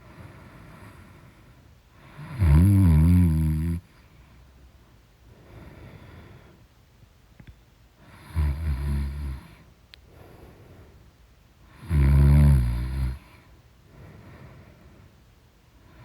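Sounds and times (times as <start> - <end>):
quiet breathing: 0.0 - 2.4, 3.7 - 6.8, 7.9 - 16.0
person snoring loudly: 2.2 - 3.8, 8.2 - 9.4, 11.8 - 13.3.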